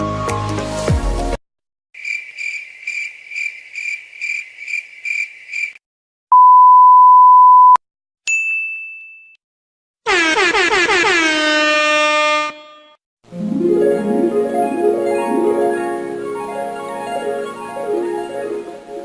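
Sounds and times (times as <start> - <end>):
crickets chirping: 2.0 - 5.8
censor bleep: 6.3 - 7.8
short high ding: 8.3 - 9.4.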